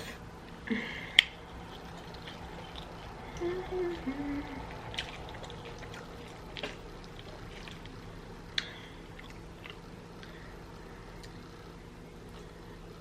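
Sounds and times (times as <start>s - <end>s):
faint steady hum: 0.0s - 13.0s
wet mouth chewing smacks: 1.1s - 10.4s.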